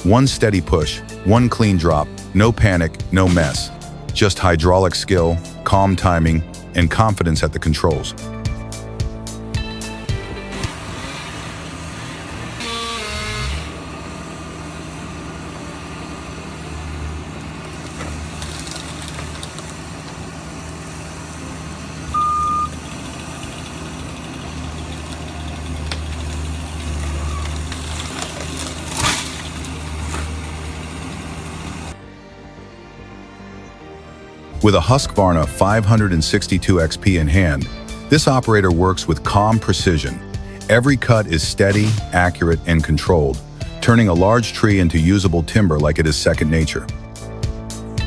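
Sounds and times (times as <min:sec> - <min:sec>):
diesel engine running: 0:00.0 - 0:48.0
short electronic beep: 0:22.2 - 0:22.7.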